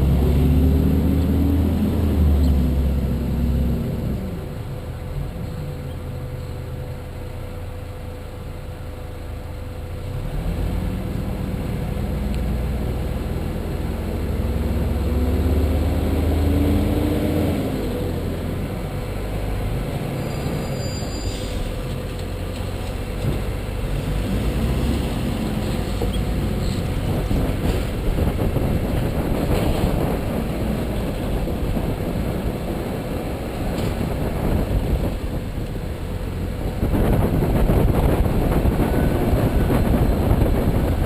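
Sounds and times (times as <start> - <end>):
road rumble: 0.0 - 41.0
car engine revving: 14.0 - 18.7.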